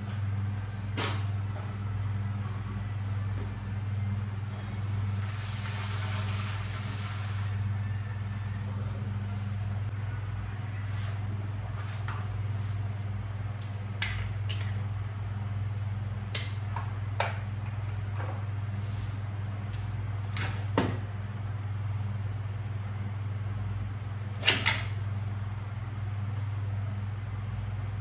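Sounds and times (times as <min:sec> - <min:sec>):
low electrical hum: 0:00.0 - 0:28.0.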